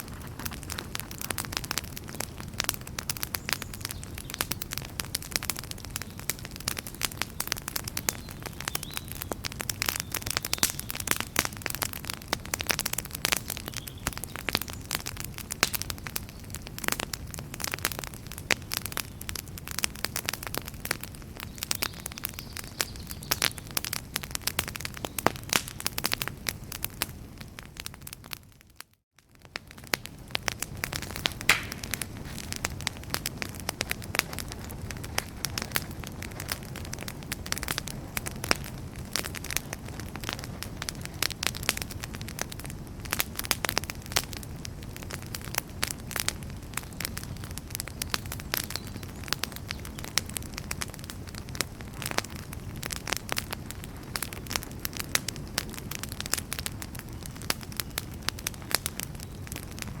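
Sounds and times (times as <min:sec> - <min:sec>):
campfire crackling and popping: 0:00.0 - 1:00.0.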